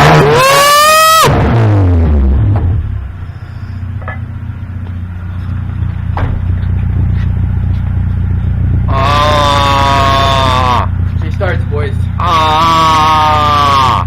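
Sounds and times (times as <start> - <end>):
engine revving: 0.0 - 4.3, 5.4 - 14.0
car engine idling: 0.0 - 14.0
light engine knocks: 6.1 - 7.0.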